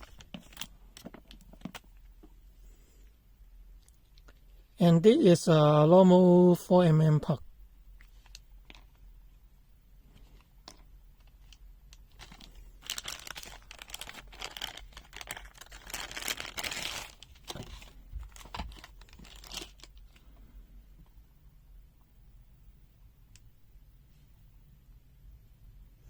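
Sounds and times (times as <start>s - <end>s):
packaging crinkling: 0.0s - 1.9s, 10.2s - 20.3s.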